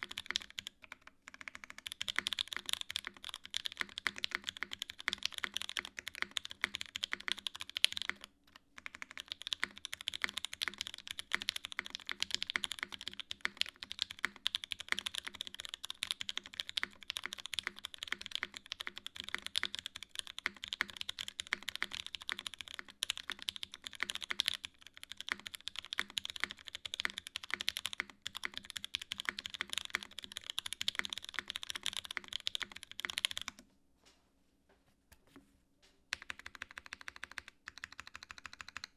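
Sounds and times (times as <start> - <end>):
mechanical keyboard typing: 0.0 - 33.6, 36.1 - 38.9.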